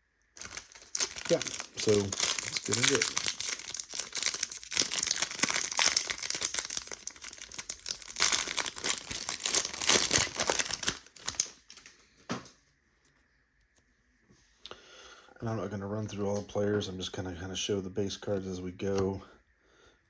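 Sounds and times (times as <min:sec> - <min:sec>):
plastic wrapper crinkling: 0:00.4 - 0:12.0.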